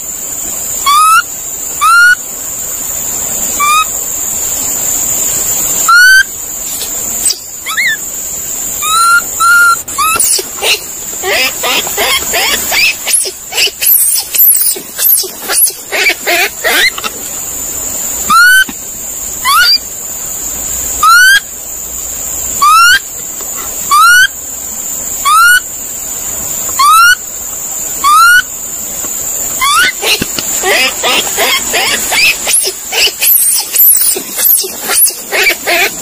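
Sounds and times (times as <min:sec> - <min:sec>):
monkey squealing: 0:00.8 - 0:02.2, 0:03.6 - 0:03.9, 0:05.8 - 0:06.3, 0:07.2 - 0:08.0, 0:08.8 - 0:17.1, 0:18.3 - 0:18.7, 0:19.4 - 0:19.8, 0:21.0 - 0:21.4, 0:22.6 - 0:23.0, 0:23.9 - 0:24.3, 0:25.2 - 0:25.6, 0:26.8 - 0:27.2, 0:28.0 - 0:28.5, 0:29.6 - 0:36.0
monkey whistle-like call: 0:00.8 - 0:02.2, 0:03.5 - 0:04.0, 0:05.8 - 0:06.3, 0:07.2 - 0:08.1, 0:08.8 - 0:17.1, 0:18.2 - 0:18.7, 0:19.4 - 0:19.9, 0:21.0 - 0:21.5, 0:22.6 - 0:23.1, 0:23.8 - 0:24.4, 0:25.2 - 0:25.7, 0:26.8 - 0:27.2, 0:28.0 - 0:28.5, 0:29.6 - 0:36.0.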